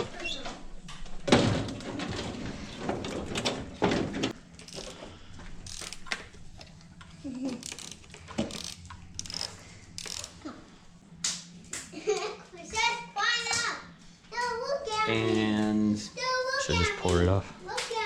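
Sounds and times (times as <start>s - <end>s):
metal tools clicking and clanking: 4.2s - 6.7s, 7.4s - 10.4s.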